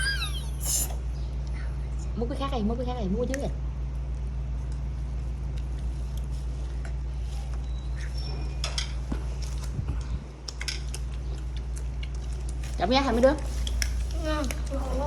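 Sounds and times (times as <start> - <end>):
low hum: 0.0 - 2.2.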